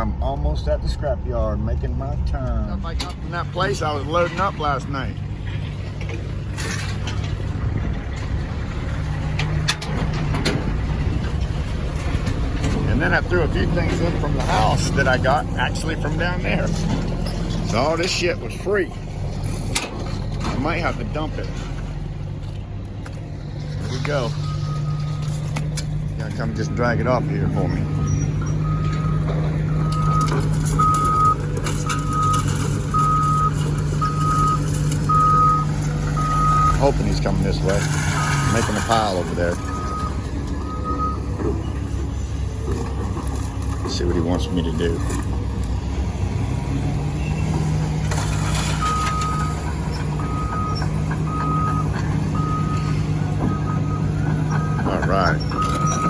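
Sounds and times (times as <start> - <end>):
engine running: 0.0 - 56.0
back-up alarm beeping: 26.4 - 37.2, 39.6 - 41.8, 48.8 - 56.0.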